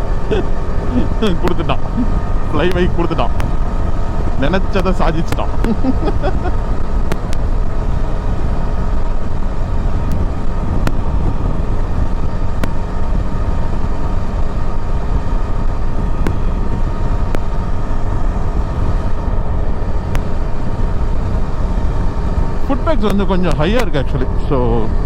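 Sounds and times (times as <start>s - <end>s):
motorcycle engine running: 0.0s - 25.0s
wind noise: 0.0s - 25.0s
sharp clicks: 4.5s - 6.4s.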